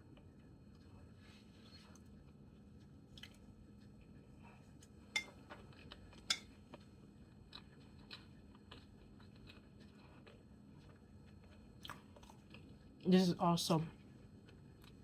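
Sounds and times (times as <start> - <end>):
cutlery clinking on plate: 5.2 - 5.4.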